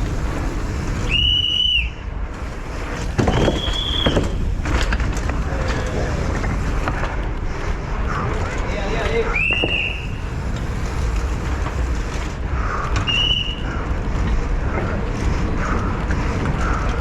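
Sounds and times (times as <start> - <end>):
high whistling squeals: 0.0 - 6.9, 9.2 - 13.9
bike tyres rumbling and rattling: 0.0 - 17.0.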